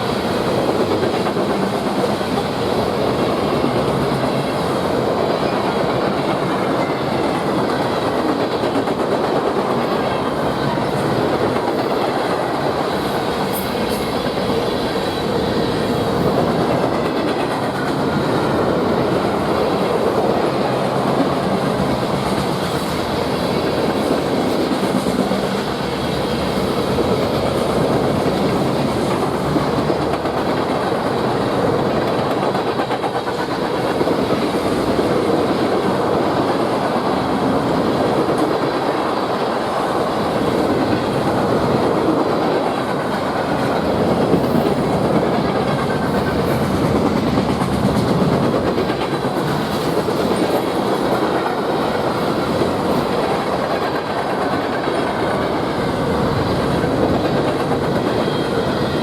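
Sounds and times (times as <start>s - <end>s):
steel train wheels on rails: 0.0s - 59.0s.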